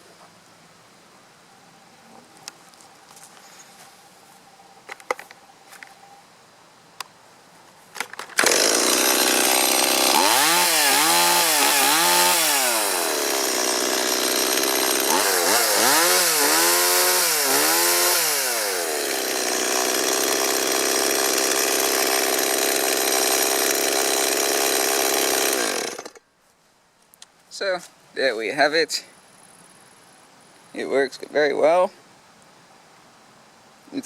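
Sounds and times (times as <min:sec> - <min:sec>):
chainsaw revving: 0:08.4 - 0:26.2.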